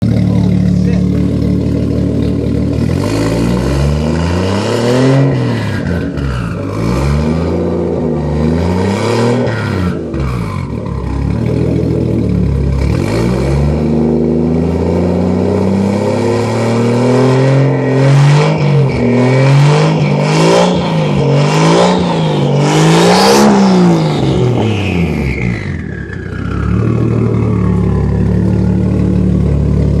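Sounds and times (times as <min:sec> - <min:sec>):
car engine revving and idling: 0:00.0 - 0:30.0
turbo whistle spooling down: 0:24.2 - 0:28.9.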